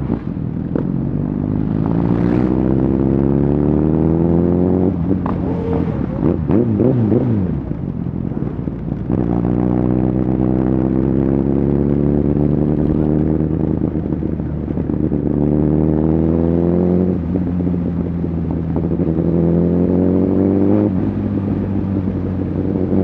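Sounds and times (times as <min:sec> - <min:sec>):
motorcycle engine accelerating: 0:00.0 - 0:23.0
other engines passing: 0:01.6 - 0:08.2, 0:11.7 - 0:14.3.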